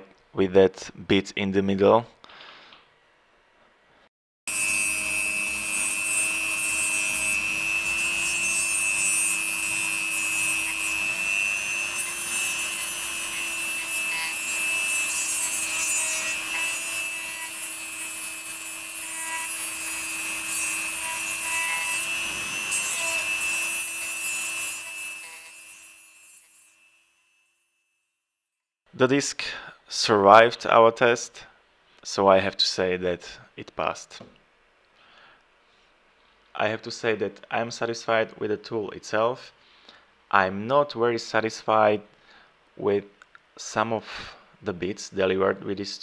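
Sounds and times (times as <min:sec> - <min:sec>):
rotary tool sanding: 0:04.5 - 0:27.2.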